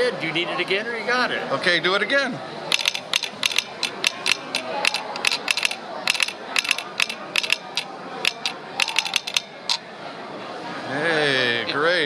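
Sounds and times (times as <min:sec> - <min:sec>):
telegraph sounder clicking morse code: 0:02.7 - 0:09.8.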